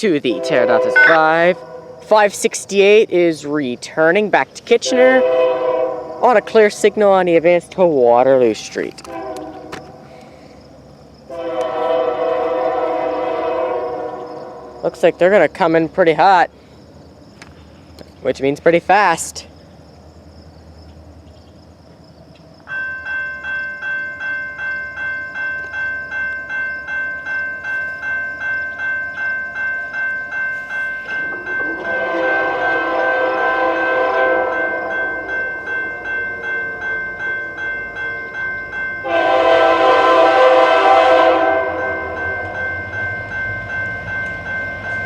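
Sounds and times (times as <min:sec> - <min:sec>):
level-crossing bell ringing: 0:00.0 - 0:01.9, 0:22.7 - 0:45.0
locomotive air horn blasts: 0:00.3 - 0:02.0, 0:05.0 - 0:06.2, 0:09.1 - 0:10.1, 0:11.3 - 0:14.8, 0:31.8 - 0:35.0, 0:39.0 - 0:42.2.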